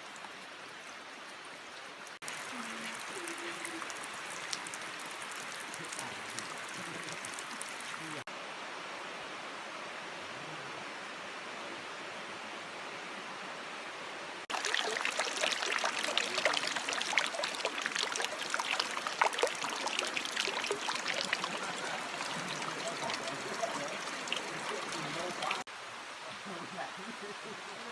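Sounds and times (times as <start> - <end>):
raindrops striking nearby: 0.0 - 8.3, 14.4 - 27.9
heavy rain hissing: 2.2 - 8.3, 14.5 - 27.9.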